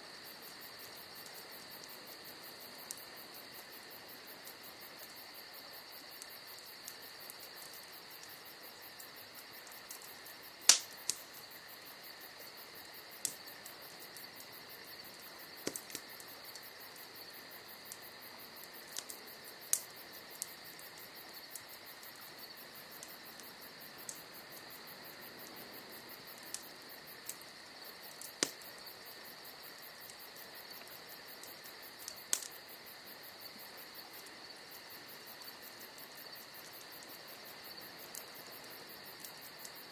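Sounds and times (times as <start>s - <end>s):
campfire crackling: 0.0s - 39.9s
crickets trilling: 0.0s - 39.9s
burning logs popping: 4.8s - 24.7s, 26.0s - 32.6s.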